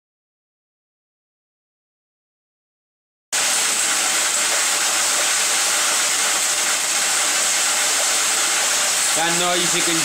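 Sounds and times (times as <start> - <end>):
feed mill grinding dry feed: 3.4 - 10.0.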